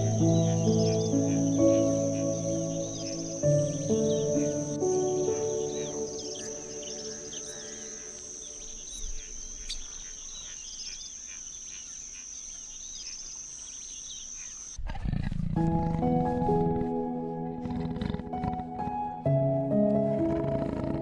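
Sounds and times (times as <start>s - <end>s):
piano music: 0.0s - 9.0s, 15.6s - 21.0s
high-pitched insect drone: 0.0s - 10.1s
small birds chirping: 0.0s - 14.8s.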